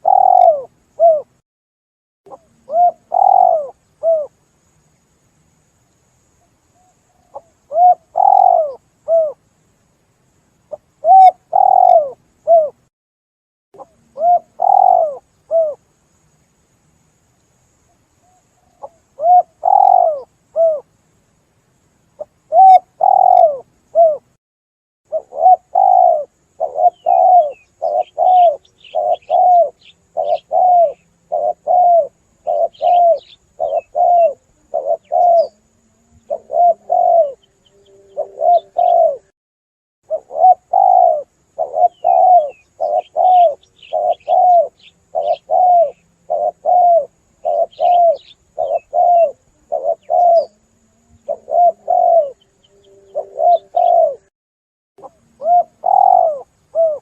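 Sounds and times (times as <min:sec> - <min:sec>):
dove cooing: 0:00.0 - 0:01.3, 0:02.3 - 0:04.4, 0:06.8 - 0:09.4, 0:10.7 - 0:12.8, 0:13.8 - 0:15.8, 0:18.2 - 0:20.9, 0:22.2 - 0:24.3, 0:25.1 - 0:39.3, 0:40.1 - 0:54.3, 0:55.0 - 0:57.0
faint high chirps: 0:25.1 - 0:39.3, 0:40.1 - 0:54.3.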